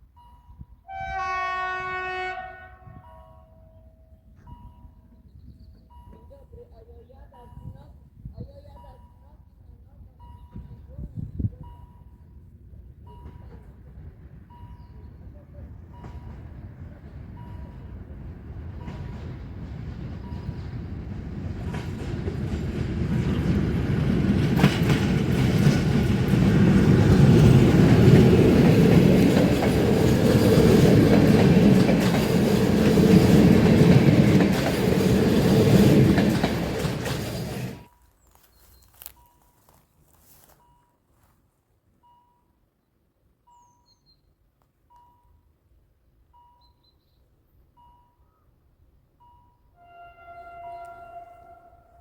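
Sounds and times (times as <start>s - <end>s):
freight train passing: 0.1s - 7.6s, 8.7s - 39.8s, 48.9s - 52.0s
faint beeping tone: 3.0s - 12.4s, 40.6s - 41.1s.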